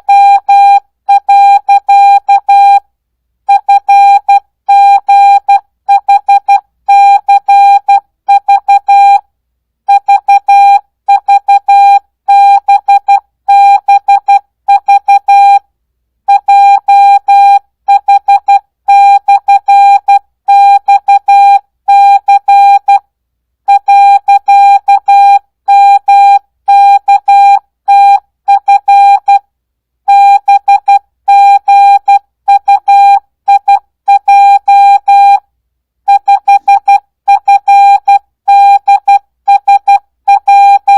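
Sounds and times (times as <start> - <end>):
morse code beeps: 9.9 - 15.6, 16.3 - 23.0, 23.7 - 29.4, 30.1 - 35.4, 36.1 - 40.9.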